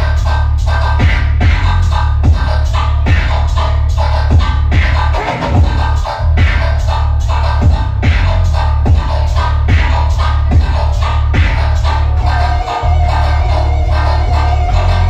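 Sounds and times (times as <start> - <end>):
heavy sub-bass: 0.0 - 15.0
repeating synth notes: 0.0 - 15.0
drum hits: 1.0 - 2.5, 4.3 - 6.7, 7.6 - 11.6.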